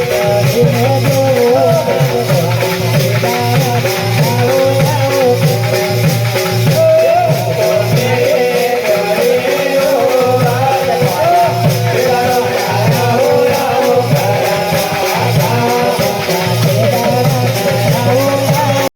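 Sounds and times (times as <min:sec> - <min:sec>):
devotional music with beat: 0:00.0 - 0:18.9.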